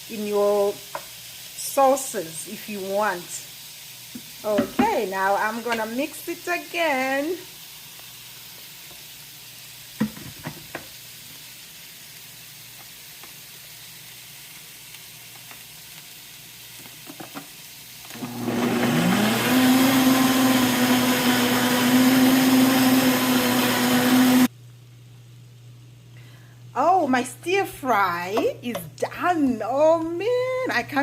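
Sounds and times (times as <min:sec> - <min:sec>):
blender clicks: 0:18.1 - 0:24.5
blender motor whining: 0:18.1 - 0:24.5.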